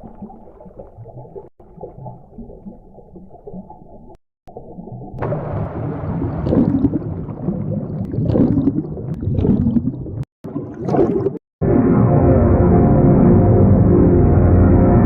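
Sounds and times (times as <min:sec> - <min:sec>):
gurgling bubbly burbling: 0:00.0 - 0:11.4.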